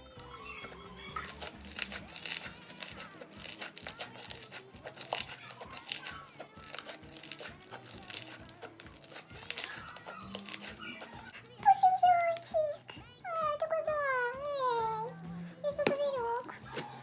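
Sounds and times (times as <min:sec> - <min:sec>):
slime crackling and popping: 0:00.0 - 0:11.4.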